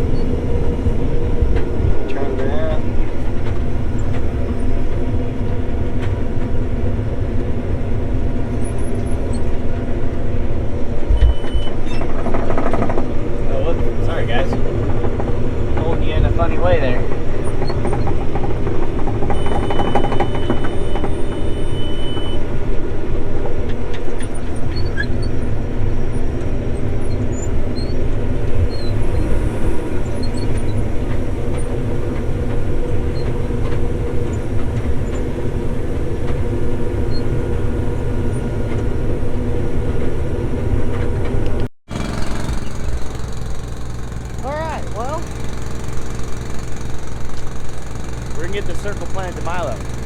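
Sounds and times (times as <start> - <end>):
combine harvester running: 0.0 - 50.0.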